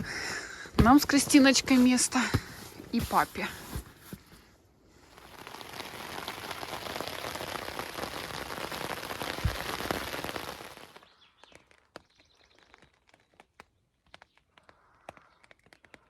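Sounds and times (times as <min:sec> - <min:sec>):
rain pattering: 0:05.2 - 0:14.8.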